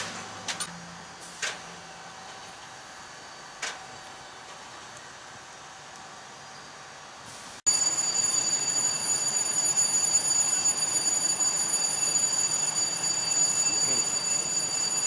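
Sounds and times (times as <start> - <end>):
high steady whines: 7.6 - 15.0
locomotive engine running: 7.7 - 15.0.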